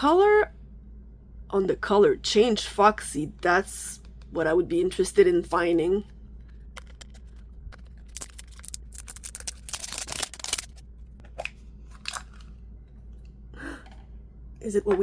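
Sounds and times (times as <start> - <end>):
plastic packaging crinkling: 6.3 - 12.6
plastic packaging tearing: 6.8 - 10.8.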